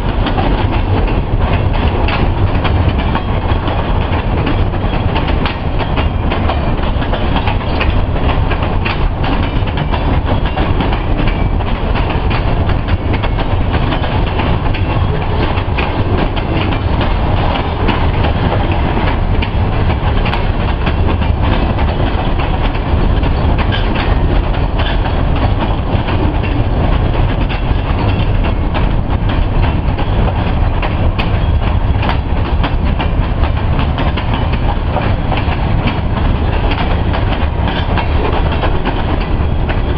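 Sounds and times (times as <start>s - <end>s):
train wheels rumbling on rail: 0.0s - 39.9s
wheels clicking over rail joints: 0.0s - 39.9s.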